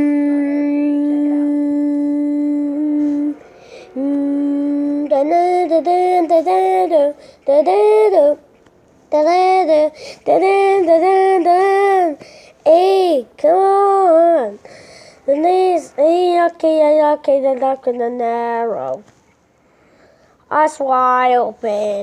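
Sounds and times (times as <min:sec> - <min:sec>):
goal song short held notes: 0:02.9 - 0:05.1.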